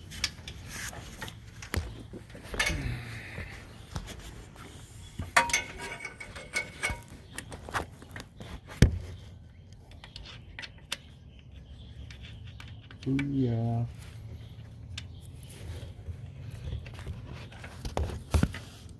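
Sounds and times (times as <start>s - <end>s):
metallic clink: 5.4s - 7.1s.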